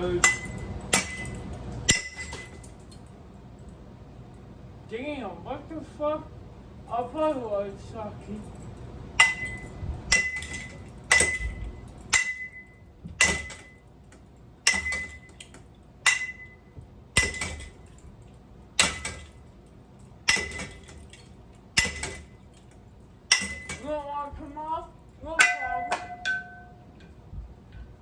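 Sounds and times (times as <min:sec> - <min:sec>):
ceiling fan struck with metallic ring: 0:09.2 - 0:13.8, 0:25.3 - 0:27.1.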